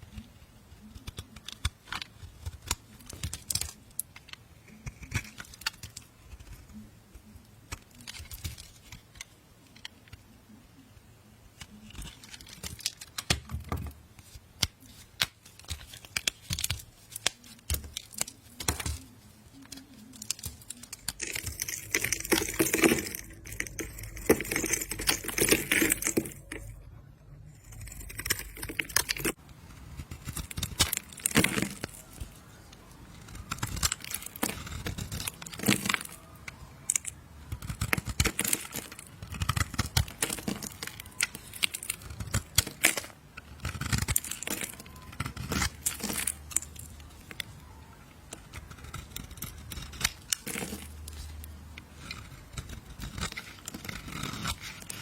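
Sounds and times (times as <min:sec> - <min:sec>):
soap crackling: 0:00.1 - 0:10.3, 0:11.5 - 0:26.8, 0:27.6 - 0:55.0
knife scraping through soap: 0:52.0 - 0:55.0.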